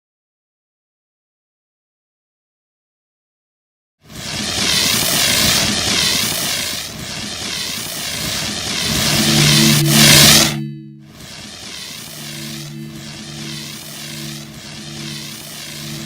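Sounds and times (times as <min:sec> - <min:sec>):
rushing engine-like sound effect: 0:04.1 - 0:16.0
steady low tones: 0:08.5 - 0:16.0.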